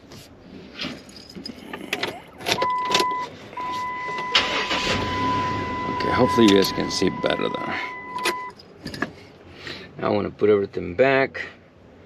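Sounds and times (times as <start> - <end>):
handling clicks and knocks: 0.8 - 4.2, 8.1 - 9.2
high electronic beep: 2.6 - 8.6.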